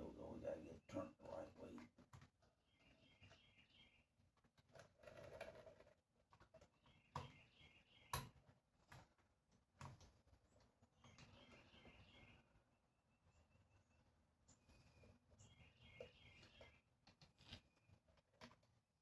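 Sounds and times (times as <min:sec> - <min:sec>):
faint bird chirps: 0:06.8 - 0:08.2, 0:11.0 - 0:18.0.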